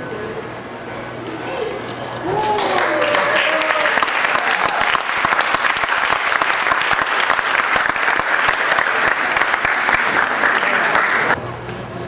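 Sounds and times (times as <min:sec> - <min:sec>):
audience applauding: 0:02.2 - 0:11.4.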